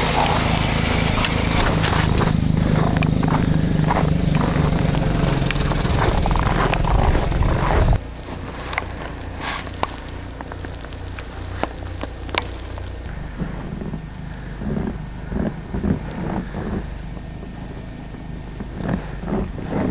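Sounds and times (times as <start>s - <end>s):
wind buffeting microphone: 0.0s - 8.1s, 10.7s - 19.9s
footsteps crunching in snow: 0.0s - 14.0s
low hum: 0.0s - 19.9s.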